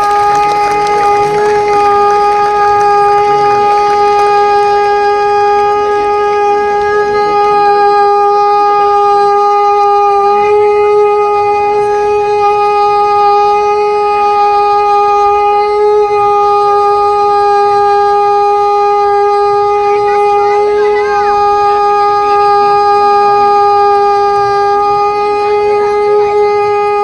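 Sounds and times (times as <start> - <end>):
conch shell blown: 0.0 - 27.0.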